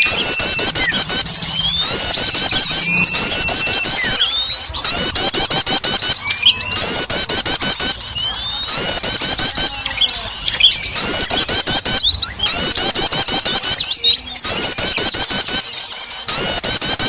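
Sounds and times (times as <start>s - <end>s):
sliding whistled bird notes: 0.0s - 16.5s
songbirds chirping: 0.0s - 17.0s.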